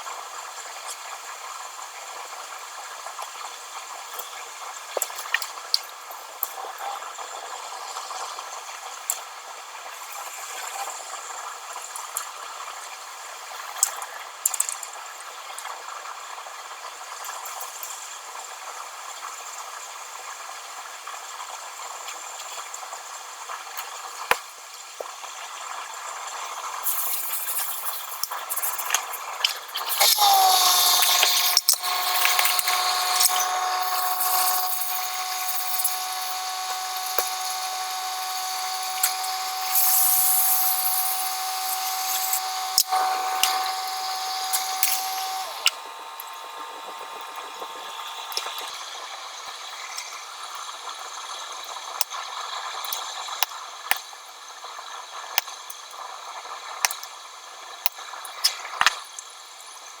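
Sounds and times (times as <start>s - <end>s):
small electric tool motor whining: 9.9s - 11.3s, 26.8s - 50.2s.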